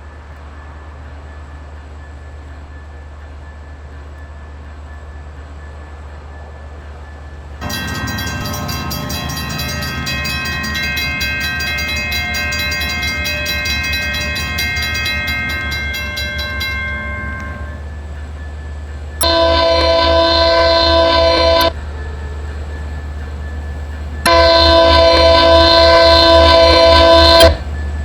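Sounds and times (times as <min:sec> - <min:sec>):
locomotive hum: 0:07.6 - 0:28.0
locomotive air horn blast: 0:19.2 - 0:21.7, 0:24.3 - 0:27.7.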